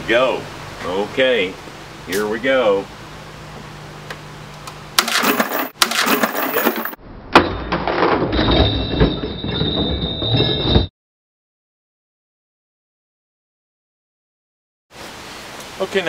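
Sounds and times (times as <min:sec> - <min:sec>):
rough clattering: 0:05.0 - 0:10.9.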